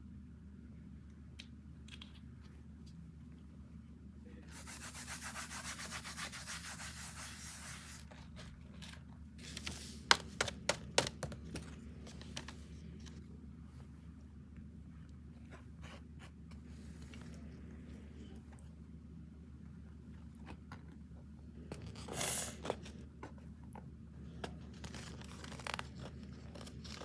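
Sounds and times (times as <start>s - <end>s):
steady rubbing noise: 4.5s - 8.1s.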